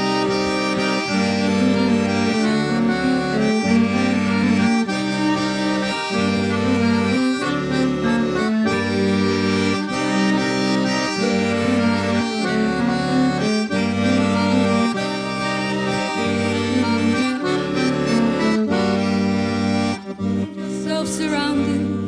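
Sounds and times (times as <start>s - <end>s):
folk band playing instrumental: 0.0s - 22.0s.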